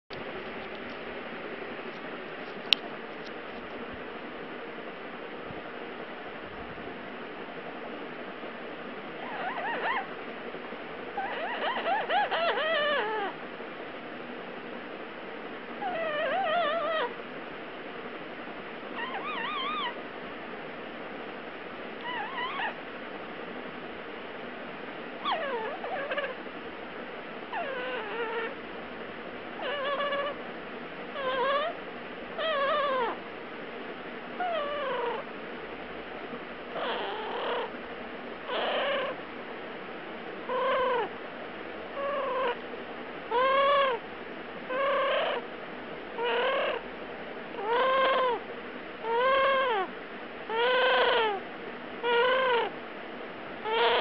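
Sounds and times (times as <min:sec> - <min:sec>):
parrot whining: 0:09.2 - 0:10.2, 0:11.2 - 0:13.4, 0:15.8 - 0:17.2, 0:19.0 - 0:20.0, 0:22.0 - 0:22.8, 0:25.2 - 0:26.4, 0:27.5 - 0:28.6, 0:29.6 - 0:30.4, 0:31.1 - 0:31.8, 0:32.4 - 0:33.2, 0:34.4 - 0:35.3, 0:36.7 - 0:37.8, 0:38.5 - 0:39.2, 0:40.4 - 0:41.2, 0:41.9 - 0:42.6, 0:43.3 - 0:44.0, 0:44.6 - 0:45.5, 0:46.2 - 0:46.8, 0:47.6 - 0:48.4, 0:49.0 - 0:52.8, 0:53.6 - 0:54.0.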